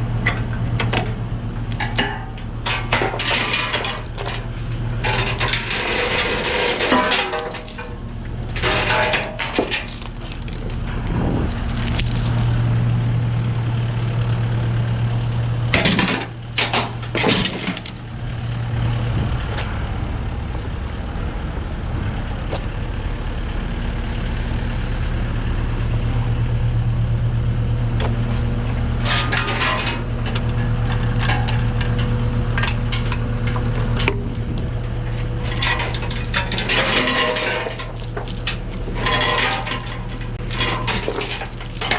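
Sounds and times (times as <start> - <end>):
diesel engine running: 0.0 - 41.9
metal clinking and clanking: 0.2 - 18.1, 29.0 - 41.9.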